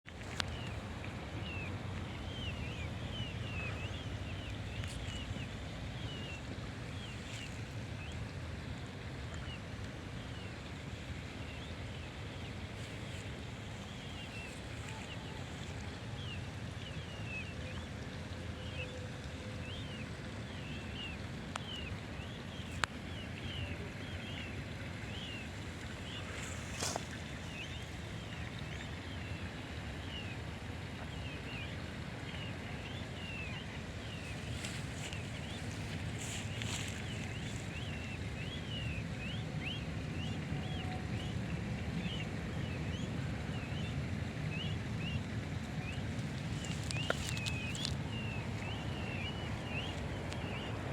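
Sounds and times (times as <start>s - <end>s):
low background rumble: 0.5s - 50.9s
small birds chirping: 25.1s - 28.4s, 32.4s - 40.9s, 45.8s - 50.9s.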